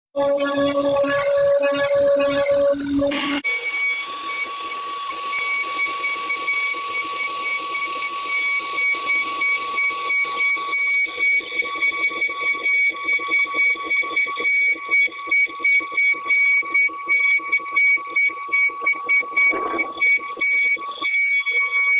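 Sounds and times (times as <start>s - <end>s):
router whining over a hiss: 3.4s - 10.0s.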